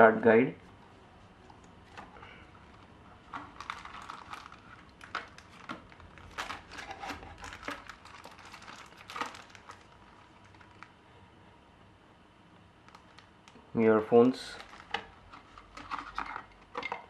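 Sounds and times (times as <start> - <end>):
paper and plastic packaging crinkling: 1.8 - 11.0, 12.8 - 13.6, 14.2 - 17.0.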